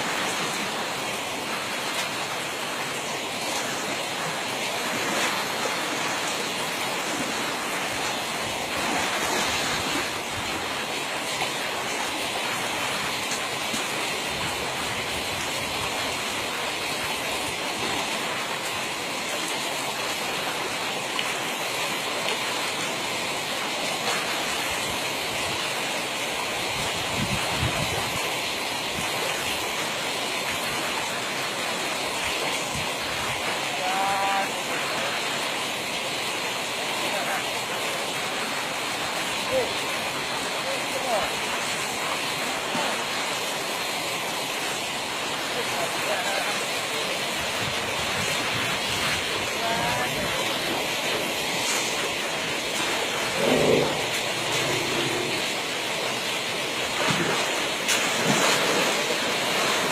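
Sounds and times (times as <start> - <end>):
steady rushing noise: 50.4 - 59.9.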